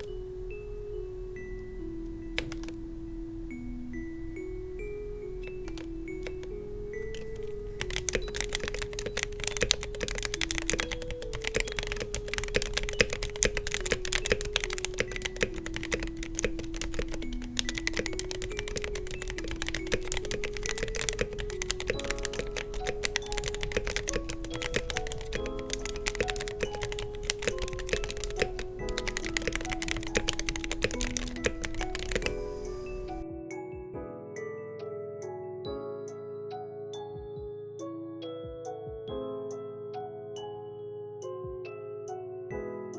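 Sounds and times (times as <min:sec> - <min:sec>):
mechanical keyboard typing: 0:00.0 - 0:00.2, 0:02.3 - 0:02.9, 0:04.8 - 0:33.2
soft background music: 0:00.0 - 0:42.9.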